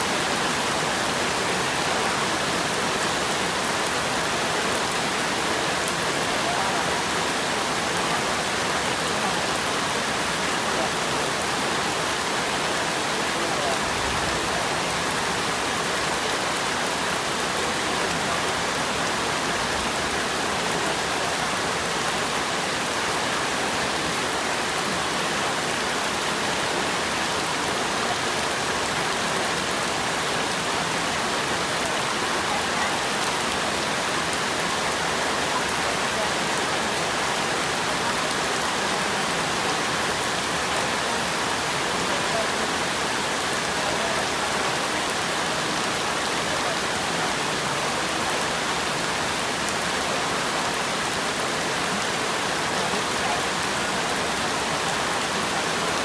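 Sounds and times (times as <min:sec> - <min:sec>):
steady rain hiss: 0:00.0 - 0:56.0.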